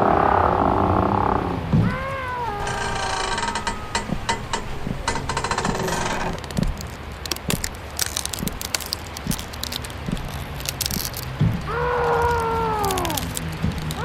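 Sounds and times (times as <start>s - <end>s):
dense rattle: 2.5s - 11.6s.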